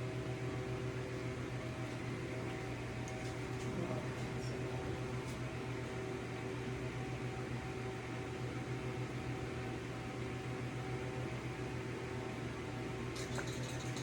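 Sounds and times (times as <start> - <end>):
kitchen appliance fan humming: 0.0 - 14.0.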